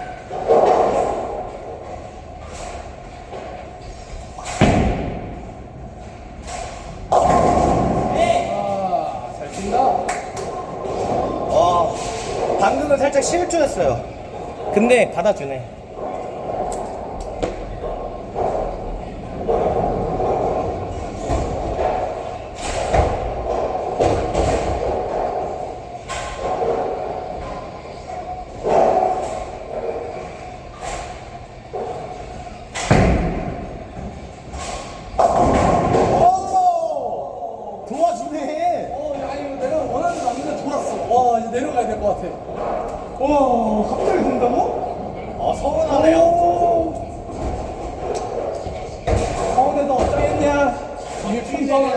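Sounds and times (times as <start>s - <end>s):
bowling pins clattering: 0.0s - 8.5s, 9.4s - 36.5s
bowling ball rolling: 0.2s - 8.2s, 9.5s - 14.8s, 15.8s - 36.2s.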